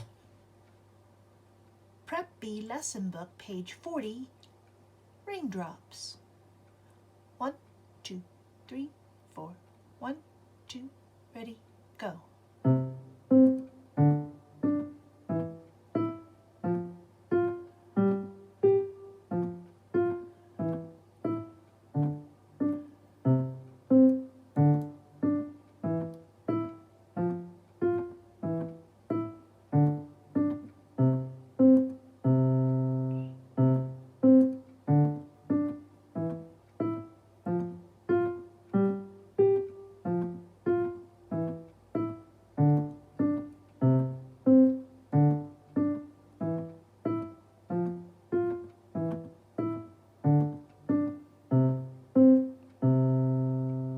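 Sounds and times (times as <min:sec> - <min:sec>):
piano playing a simple piece: 0:12.6 - 0:53.9.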